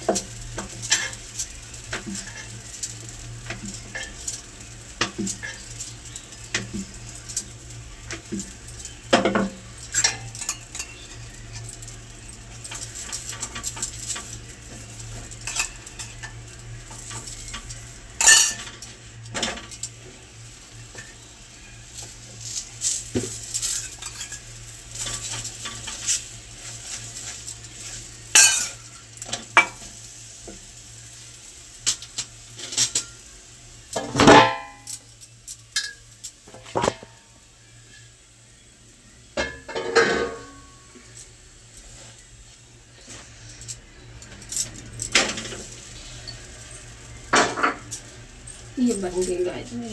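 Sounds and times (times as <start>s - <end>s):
pots and cutlery clattering: 0.0s - 2.6s, 3.4s - 4.4s, 8.1s - 11.9s, 12.6s - 19.9s, 21.9s - 27.6s, 28.3s - 29.8s, 33.9s - 35.0s, 39.4s - 40.7s, 47.2s - 48.0s.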